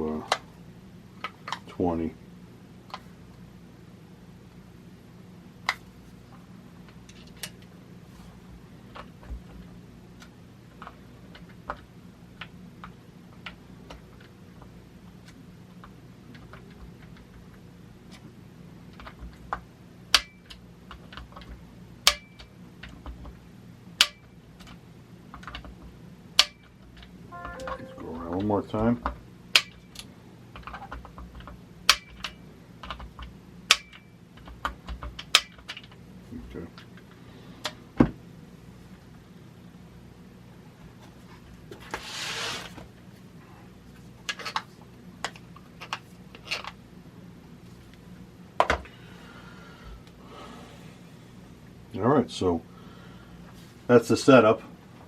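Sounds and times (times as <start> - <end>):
steady low hum: 44.8 - 53.9.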